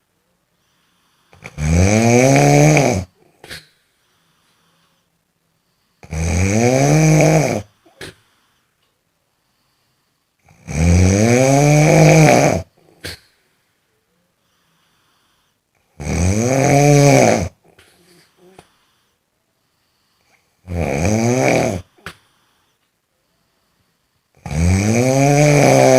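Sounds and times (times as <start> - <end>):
person snoring: 0.7 - 5.0, 6.0 - 8.4, 10.5 - 13.3, 14.6 - 19.1, 19.8 - 22.8, 23.6 - 25.9.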